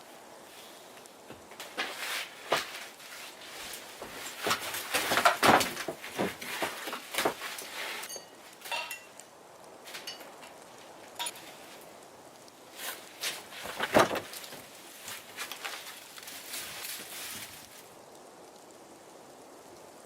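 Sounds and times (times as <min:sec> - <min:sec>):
gear being handled: 0:12.7 - 0:17.9.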